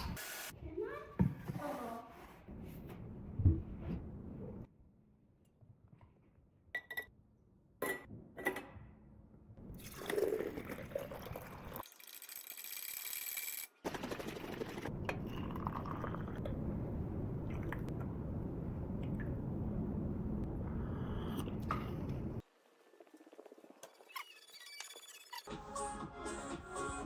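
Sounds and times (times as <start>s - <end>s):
liquid pouring into glass: 9.8s - 13.3s, 15.2s - 16.4s.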